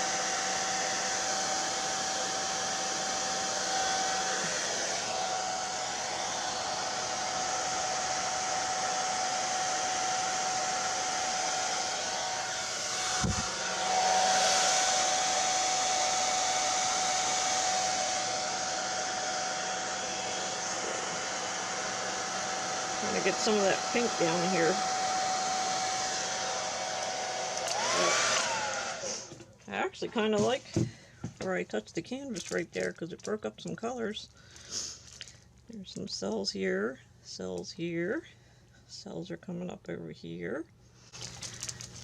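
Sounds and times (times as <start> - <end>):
hair dryer running: 0.0 - 31.7, 41.1 - 42.0.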